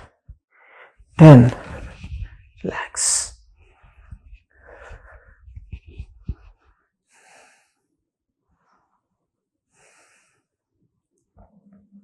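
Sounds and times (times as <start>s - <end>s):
person breathing out heavily: 7.1s - 7.8s.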